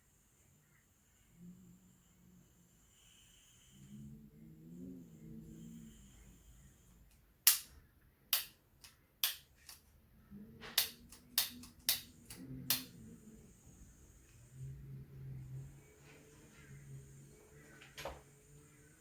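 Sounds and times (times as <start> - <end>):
sharp clicks or taps: 7.5 - 7.7, 8.4 - 8.6, 9.2 - 9.8, 10.8 - 12.9.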